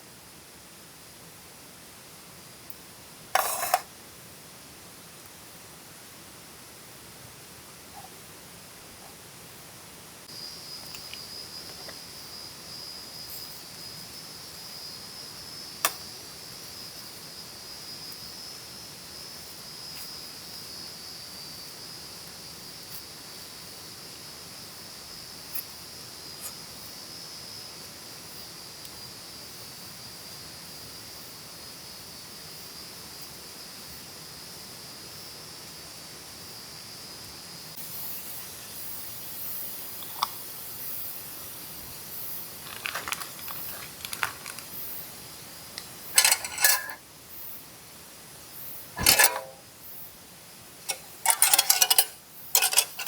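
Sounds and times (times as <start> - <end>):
insects chirring: 2.7 - 3.9, 10.2 - 53.0
soft even hiss: 32.6 - 53.0.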